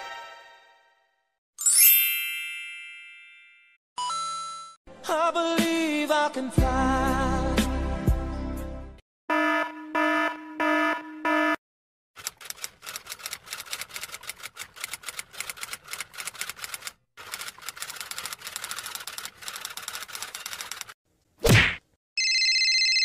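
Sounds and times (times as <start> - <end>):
key typing clicks: 12.2 - 20.9.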